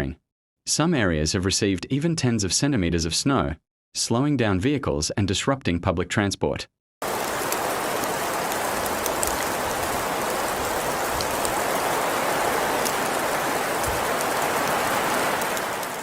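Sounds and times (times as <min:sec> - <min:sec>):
rain pattering: 0:07.0 - 0:16.0.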